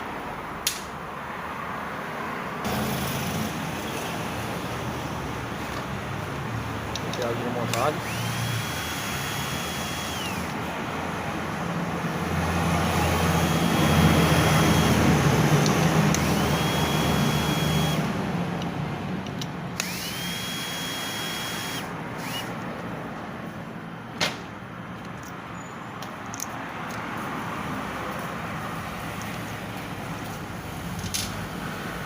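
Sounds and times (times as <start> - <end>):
noisy background rush: 0.0 - 32.0
sharp clicks: 6.9 - 10.6, 18.6 - 22.7
power tool motor whining: 7.0 - 10.7, 12.8 - 18.1, 19.8 - 22.6.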